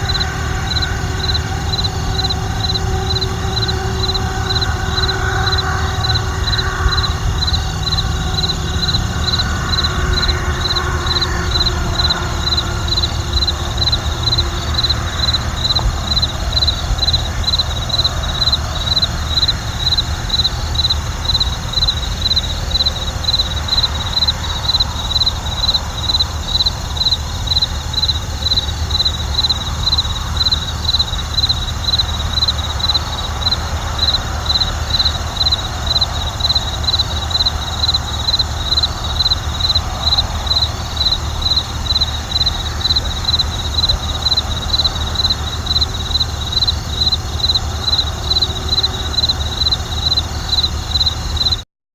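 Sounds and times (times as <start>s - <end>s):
crickets chirping: 0.0s - 51.6s
distant traffic rumble: 0.0s - 51.6s.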